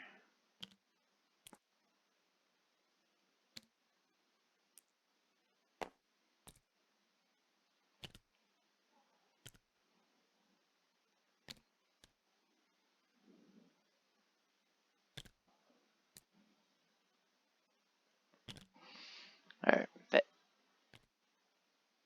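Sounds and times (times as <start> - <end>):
game pieces clicking: 15.2 - 15.4, 18.4 - 18.8.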